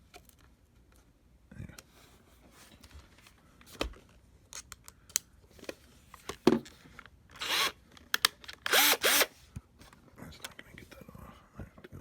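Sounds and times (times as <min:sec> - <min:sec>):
screwdriver and plastic clicks: 0:07.3 - 0:09.3.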